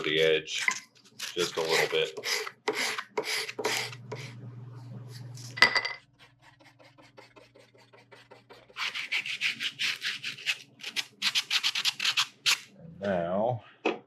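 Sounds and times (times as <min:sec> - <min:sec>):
rhythmic rubbing on wooden handle: 0:06.0 - 0:09.9.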